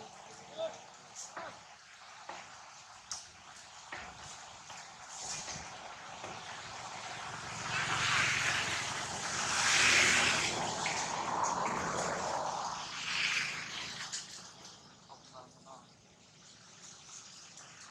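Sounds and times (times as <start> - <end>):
passing engine humming: 5.7 - 15.0.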